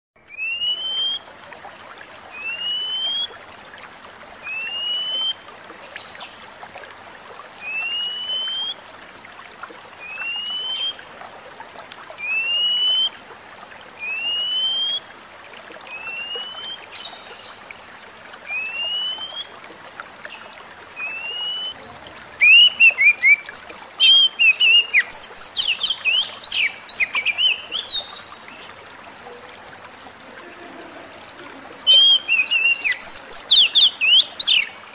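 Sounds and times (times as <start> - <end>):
bird chirping song: 0.2 - 1.2, 4.4 - 6.4, 7.6 - 8.8, 10.0 - 11.0, 15.9 - 17.7, 20.3 - 21.8, 22.4 - 28.8, 31.9 - 34.9.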